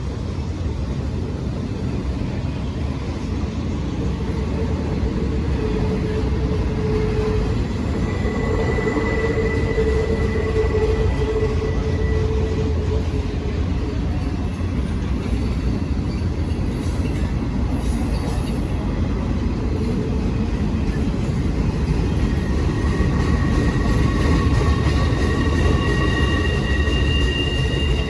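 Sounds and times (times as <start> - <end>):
train wheels rumbling on rail: 0.0 - 28.0
wheels squealing: 4.3 - 18.9, 21.9 - 28.0.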